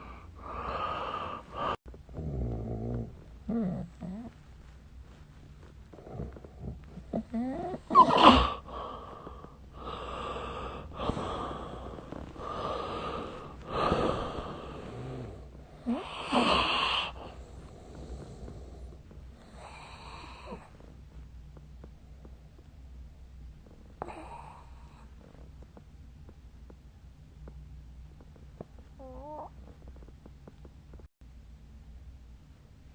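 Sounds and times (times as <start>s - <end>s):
person snoring: 0.4s - 4.3s, 5.9s - 17.4s.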